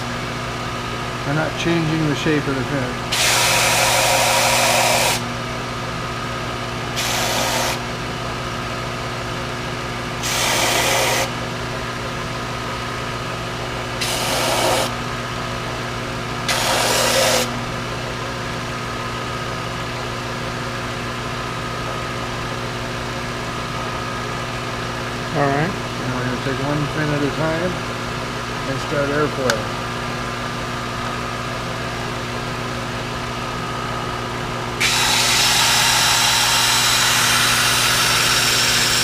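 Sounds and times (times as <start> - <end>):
belt sander motor: 3.1 - 5.2, 7.0 - 7.9, 14.0 - 14.9, 16.5 - 17.6, 34.8 - 39.0
metal edges sanding on belt: 3.2 - 5.2, 7.0 - 7.8, 10.2 - 11.3, 14.0 - 14.9, 16.5 - 17.5.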